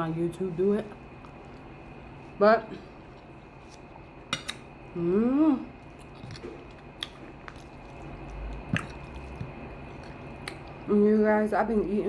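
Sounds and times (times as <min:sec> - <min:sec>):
person chewing food: 0:00.9 - 0:04.8, 0:05.6 - 0:10.9
wet lip-smacking clicks: 0:08.3 - 0:10.9.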